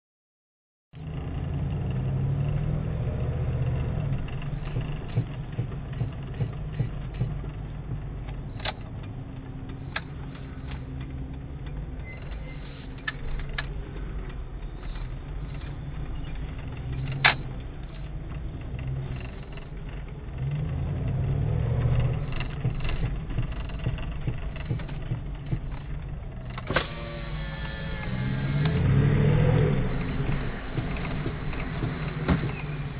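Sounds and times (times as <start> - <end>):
engine and road rumble: 0.9 - 32.9
sharp clacks: 3.7 - 27.0.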